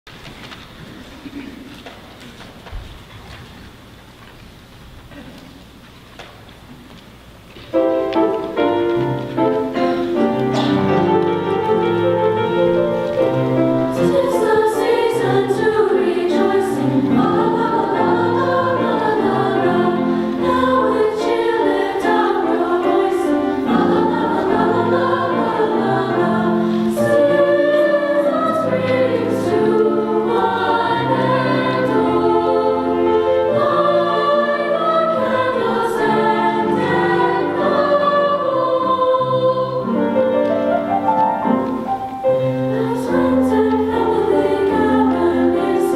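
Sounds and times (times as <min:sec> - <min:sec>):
women's chorus singing: 0:11.8 - 0:40.4, 0:42.3 - 0:45.9.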